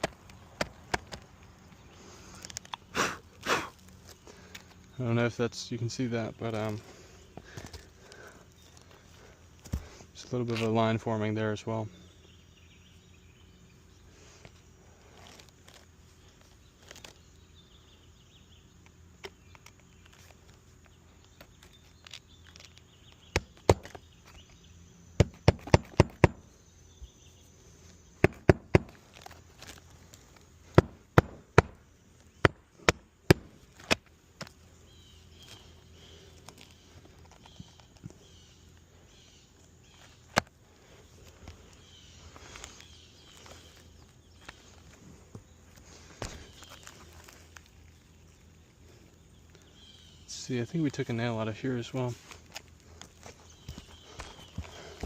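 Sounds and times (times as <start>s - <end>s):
hammer driving nails into shingles: 25.2s - 26.4s, 28.2s - 29.0s, 30.8s - 31.8s.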